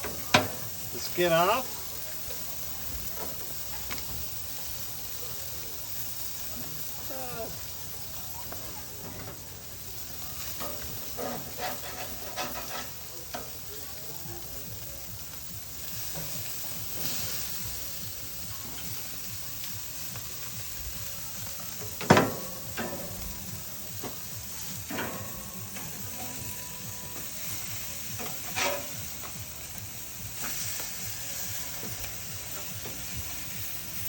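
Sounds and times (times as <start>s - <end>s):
fish sizzling on a grill: 0.0s - 34.0s
utensil knocking and scraping: 11.2s - 13.0s, 28.2s - 29.0s.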